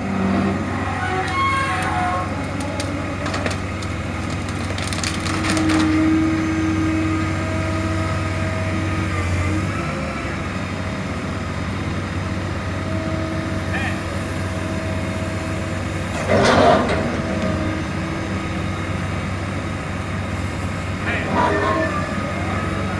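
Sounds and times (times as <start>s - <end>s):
engine droning: 0.0s - 22.9s
wood cracking and splintering: 1.8s - 6.0s.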